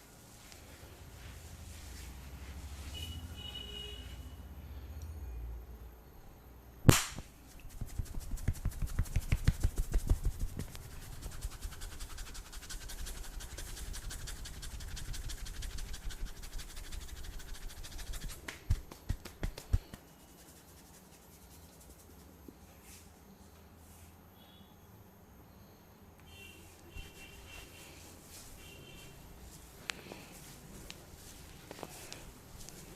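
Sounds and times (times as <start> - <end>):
hand slapping: 6.9 - 10.7, 18.1 - 20.0
rhythmic tapping and rubbing: 7.7 - 22.3.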